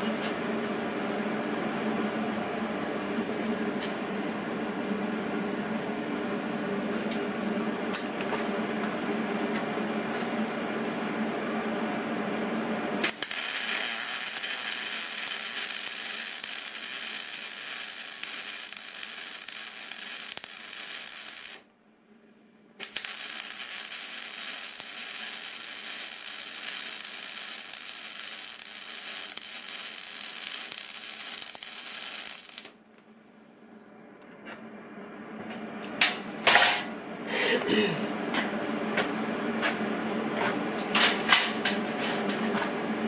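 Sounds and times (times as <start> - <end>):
welding arc hissing: 13.0 - 21.6, 22.8 - 32.8
low steady hum: 32.8 - 43.0.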